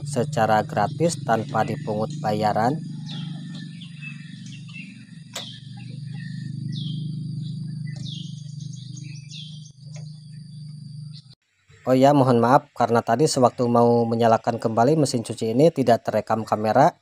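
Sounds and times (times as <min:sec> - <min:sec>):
steady low hum: 0:00.0 - 0:11.4
small bird chirping: 0:00.0 - 0:11.9
sharp click: 0:05.3 - 0:05.6.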